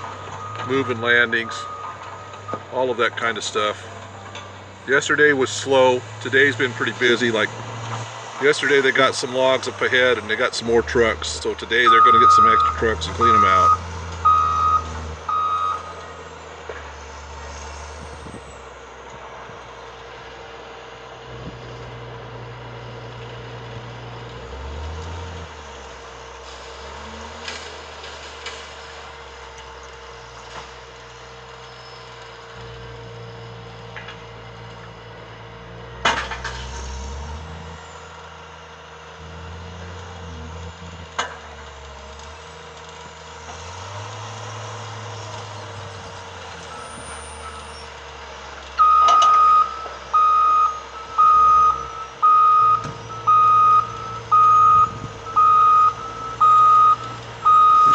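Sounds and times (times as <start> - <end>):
diesel engine revving: 0.0 - 57.9
reversing alarm beeping: 0.3 - 2.7, 11.8 - 16.0, 46.7 - 47.8, 48.8 - 57.9.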